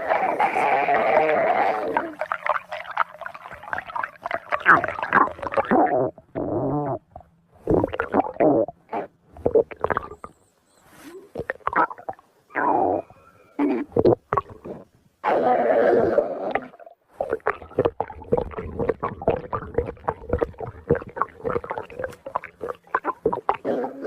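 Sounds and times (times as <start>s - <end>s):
cartoon stomach growling: 0.0s - 10.3s, 11.3s - 24.0s.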